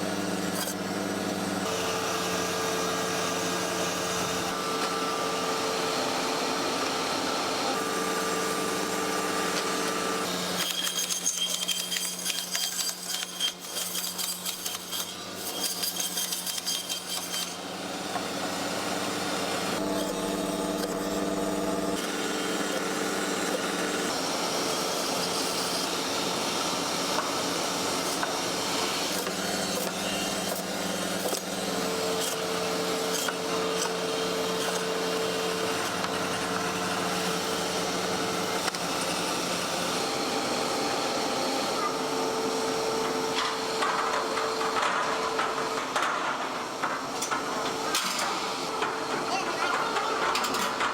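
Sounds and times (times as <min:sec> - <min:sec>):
machine motor humming: 0:17.8 - 0:24.7.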